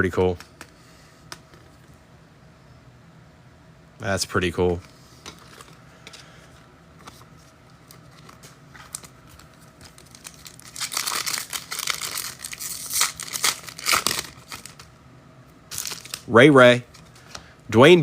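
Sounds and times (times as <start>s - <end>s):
wrapper tearing and crinkling: 7.9s - 14.9s, 15.7s - 17.1s.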